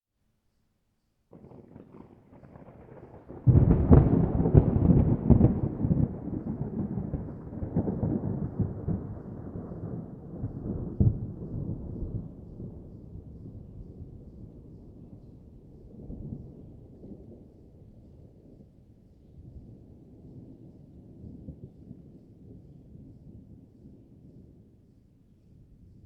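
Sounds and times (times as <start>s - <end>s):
thunder rumbling: 1.3s - 18.8s
crackling thunder clap: 1.3s - 24.8s.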